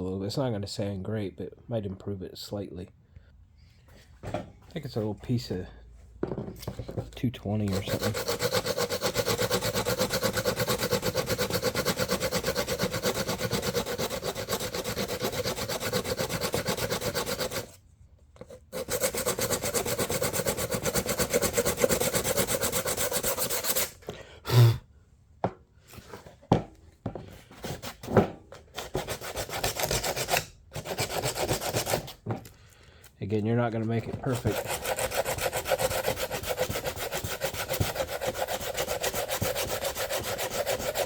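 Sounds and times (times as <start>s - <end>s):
sandpaper rubbing on plastic: 7.6s - 17.8s, 18.7s - 24.0s, 28.7s - 32.2s, 34.1s - 41.0s.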